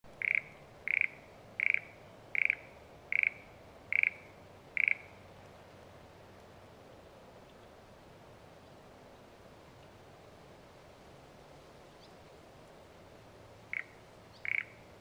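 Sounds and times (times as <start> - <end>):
frog croaking: 0.2 - 5.2, 13.7 - 14.8.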